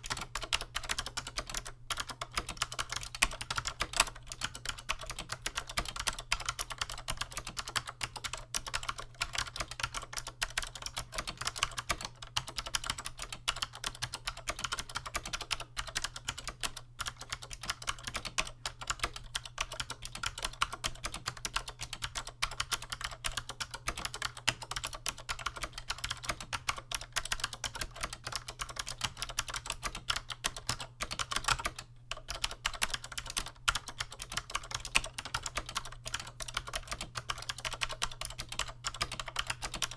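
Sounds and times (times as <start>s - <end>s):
fast typing on clicky keyboard: 0.0s - 39.9s.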